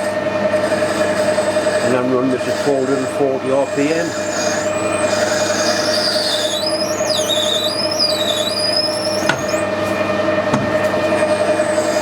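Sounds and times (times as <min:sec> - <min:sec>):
lathe running hum: 0:00.0 - 0:12.0
drill squealing in metal: 0:00.7 - 0:09.8.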